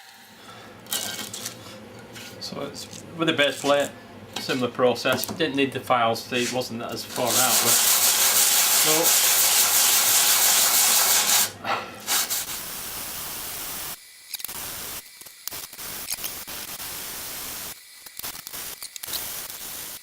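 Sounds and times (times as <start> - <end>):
metal plate scraping on abrasive: 6.4 - 11.5.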